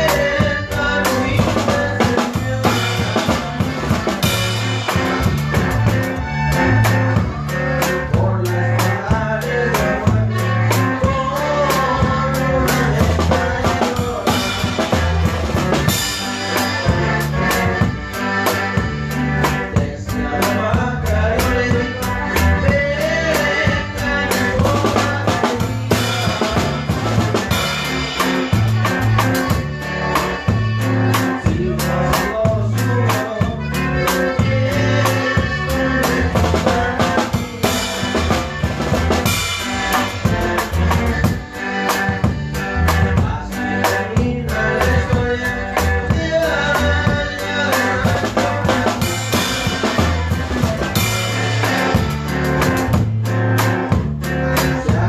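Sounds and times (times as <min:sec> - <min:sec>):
drum kit beat: 0:00.0 - 0:55.0
live band music: 0:00.0 - 0:55.0
walking bass line: 0:00.0 - 0:55.0.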